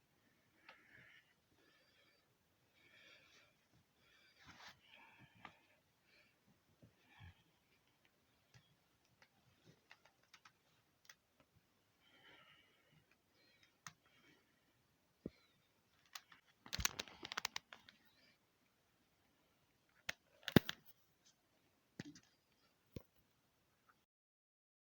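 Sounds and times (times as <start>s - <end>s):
sharp clicks and crackles: 15.9s - 18.0s, 19.9s - 20.9s.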